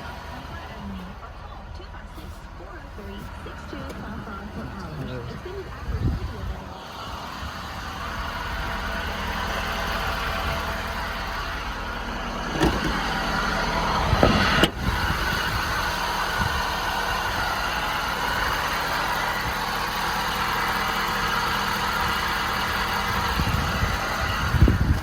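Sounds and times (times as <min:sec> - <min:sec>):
engine idling: 0:00.0 - 0:25.0.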